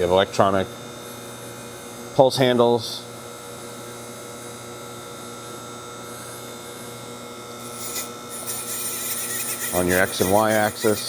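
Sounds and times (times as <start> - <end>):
rough rubbing scraping noise: 7.7 - 11.0.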